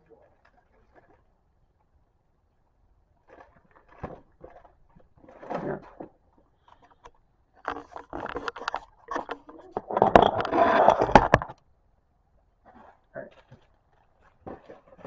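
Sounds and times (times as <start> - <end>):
clatter of objects: 3.2 - 11.6, 12.6 - 15.0
objects knocking and clicking: 3.3 - 11.6.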